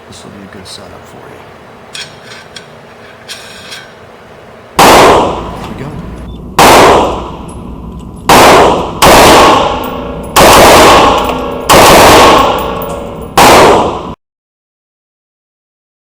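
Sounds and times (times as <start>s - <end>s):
gunshots with echo: 4.8s - 5.6s, 6.6s - 7.4s, 8.3s - 14.2s.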